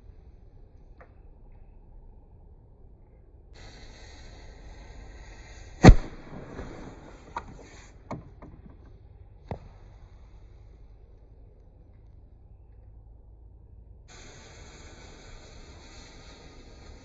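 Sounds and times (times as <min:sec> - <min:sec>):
steady hiss: 0:03.4 - 0:11.8, 0:14.0 - 0:17.0
faint firework cracks: 0:03.6 - 0:11.2
loud firework bang: 0:05.8 - 0:08.1.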